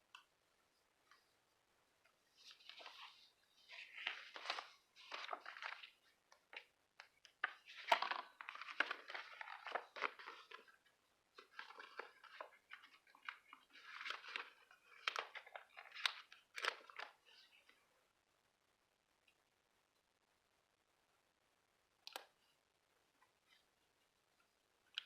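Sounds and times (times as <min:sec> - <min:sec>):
paper crinkling and rustling: 0:02.4 - 0:17.8.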